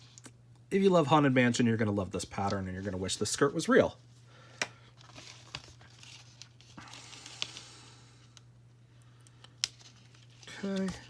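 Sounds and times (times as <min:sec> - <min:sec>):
low steady hum: 0:00.0 - 0:11.0
rustling of doll clothes and packaging: 0:02.1 - 0:04.1, 0:04.8 - 0:07.8, 0:09.7 - 0:11.0.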